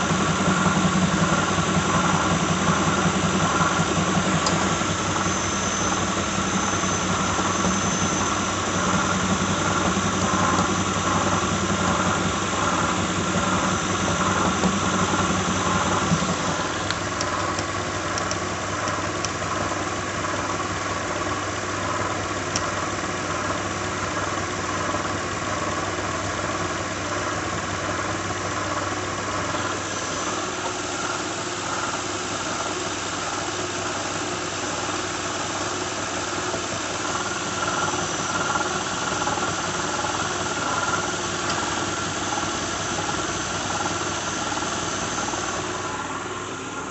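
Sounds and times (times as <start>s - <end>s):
car engine idling: 0.0s - 23.4s, 36.4s - 46.9s
whirring squeal and rattle: 0.0s - 46.9s.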